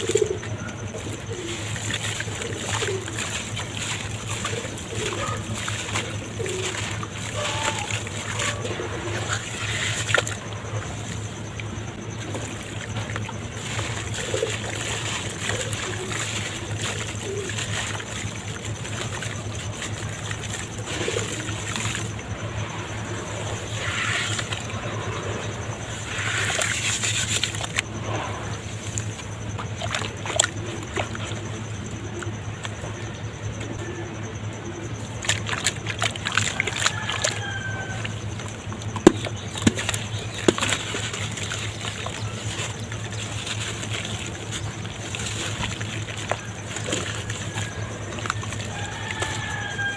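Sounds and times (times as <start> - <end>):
dirt crumbling in water: 0.0 - 27.9, 28.8 - 31.6, 35.1 - 49.9
small splashes and trickling: 0.0 - 33.8, 34.4 - 49.9.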